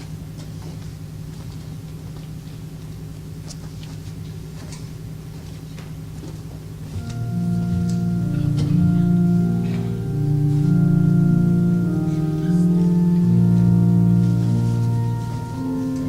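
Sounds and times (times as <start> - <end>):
organ playing sustained chords: 6.8 - 16.0.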